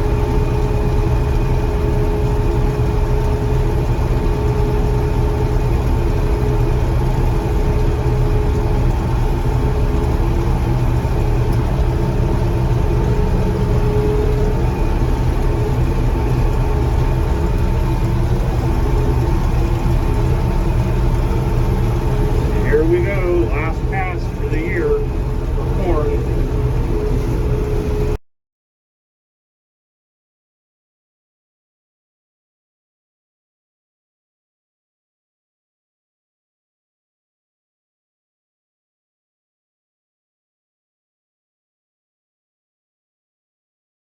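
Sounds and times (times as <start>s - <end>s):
combine engine drone: 0.0s - 28.2s
constant high tone: 20.4s - 26.4s.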